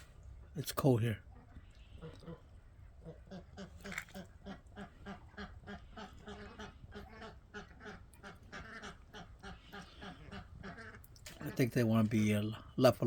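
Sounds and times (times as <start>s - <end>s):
ducklings giving rapid calls: 3.0s - 11.7s.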